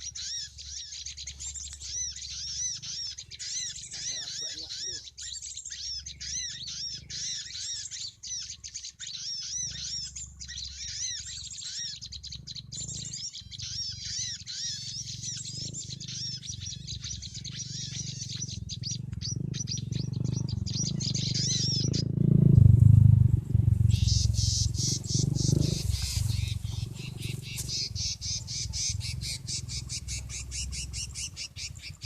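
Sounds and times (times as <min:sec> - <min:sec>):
birds chirping: 0:00.0 - 0:32.0
low steady rumble: 0:09.4 - 0:32.0.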